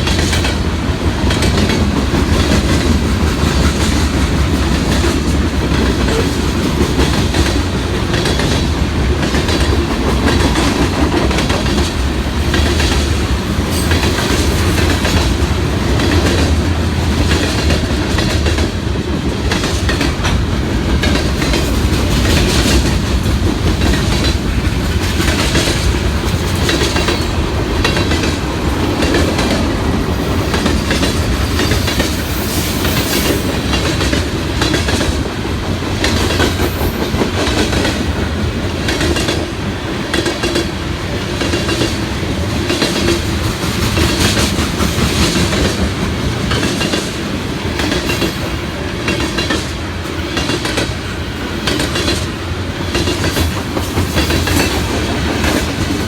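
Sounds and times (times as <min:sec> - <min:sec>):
wheels clicking over rail joints: 0:00.0 - 0:42.0
freight train cars rolling: 0:00.0 - 0:56.0.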